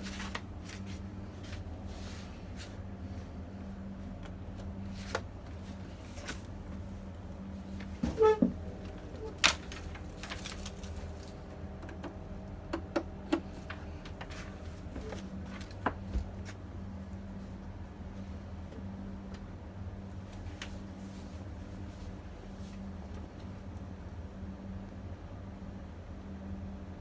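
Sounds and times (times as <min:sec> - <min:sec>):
short squeak: 0:08.0 - 0:08.6.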